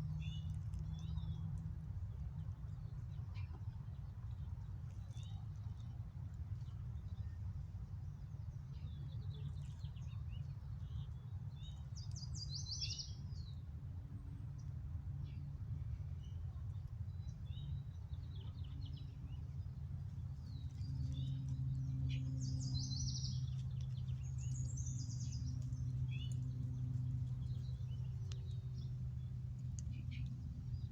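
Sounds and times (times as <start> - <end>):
steady low hum: 0.0 - 30.9
small birds chirping: 8.2 - 13.6, 16.2 - 30.9.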